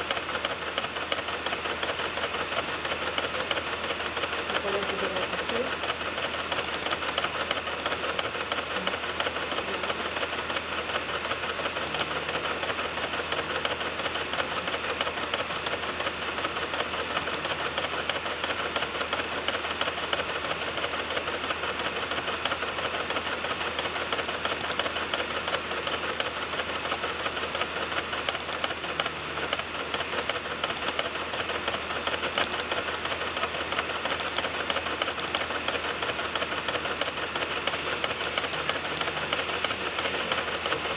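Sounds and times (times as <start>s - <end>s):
dvd drive spinning and clicking: 0.0s - 40.9s.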